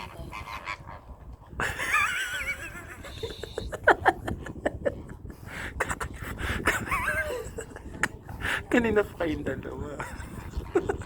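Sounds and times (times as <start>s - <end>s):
flamingos honking and calling: 0.0s - 1.3s.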